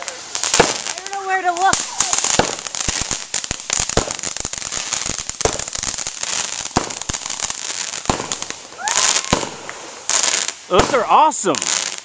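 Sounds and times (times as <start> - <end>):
fireworks bangs: 0.0 - 12.0
fireworks crackling: 0.0 - 12.0
steady hiss: 0.0 - 12.0.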